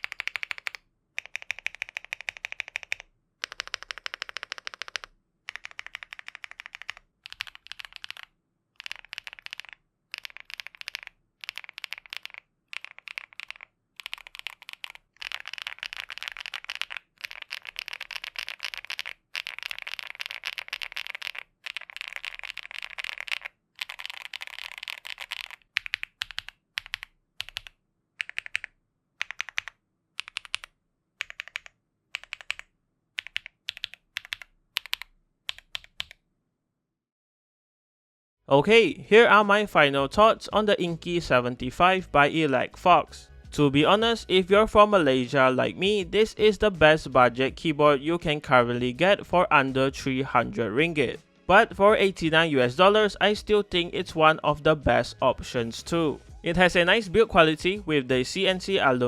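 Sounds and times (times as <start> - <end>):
typing on mechanical keyboard: 0.0 - 36.2.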